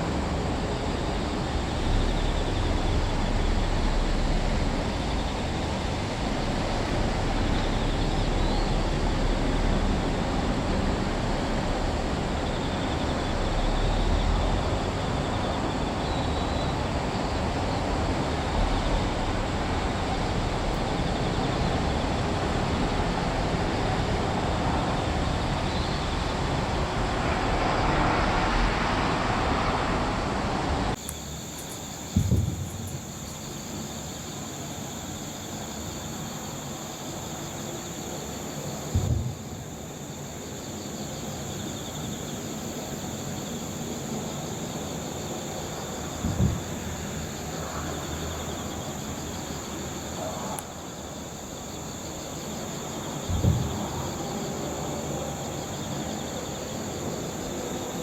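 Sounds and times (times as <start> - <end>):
crickets trilling: 0.0 - 58.0
passing vehicle rumble: 17.8 - 31.0.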